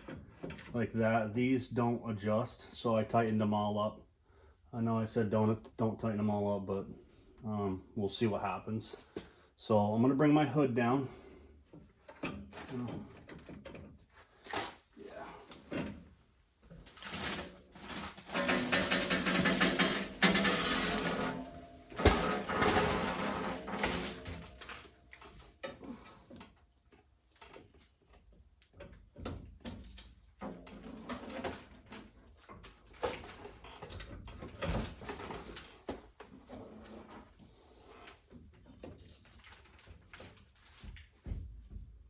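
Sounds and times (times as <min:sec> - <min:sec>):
metal clicks and knocks: 0:18.3 - 0:25.8.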